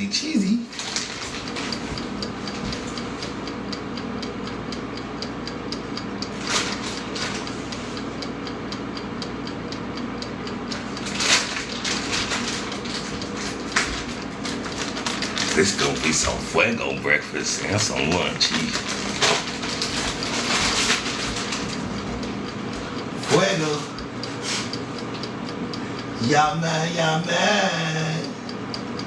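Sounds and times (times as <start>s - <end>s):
steady mechanical hum: 0.0s - 29.0s
fast even ticking: 8.2s - 29.0s.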